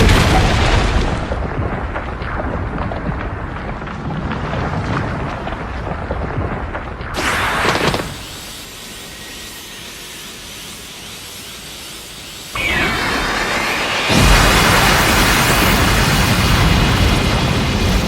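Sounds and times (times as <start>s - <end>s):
crackling explosion rumble: 0.0s - 8.5s, 12.6s - 18.0s
bright whooshing burst: 12.5s - 16.4s.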